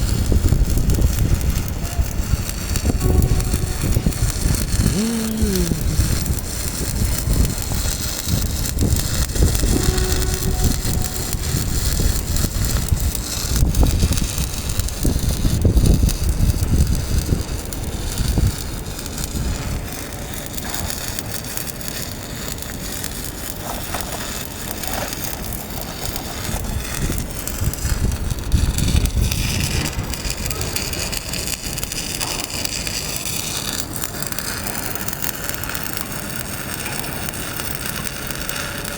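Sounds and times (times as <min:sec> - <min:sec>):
wind rumbling on microphone: 0:00.0 - 0:05.0, 0:05.7 - 0:19.9, 0:26.1 - 0:32.7
arc welding crackle and sizzle: 0:00.0 - 0:38.9.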